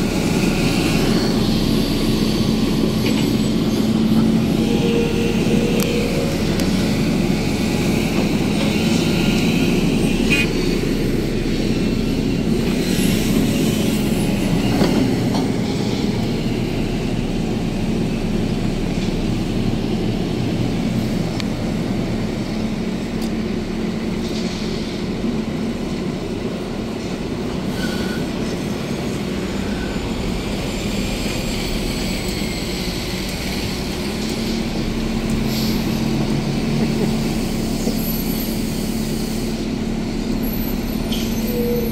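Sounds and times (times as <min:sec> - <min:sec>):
excavator diesel engine running: 0:00.0 - 0:41.9.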